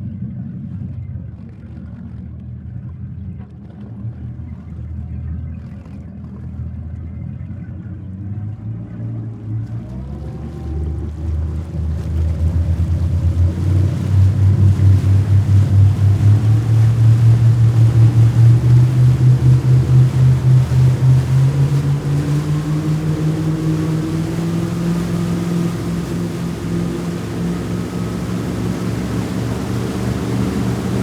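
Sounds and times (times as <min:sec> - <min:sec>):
speedboat motor throbbing: 0:00.0 - 0:31.0
water noise: 0:00.0 - 0:31.0
wind noise: 0:11.2 - 0:31.0.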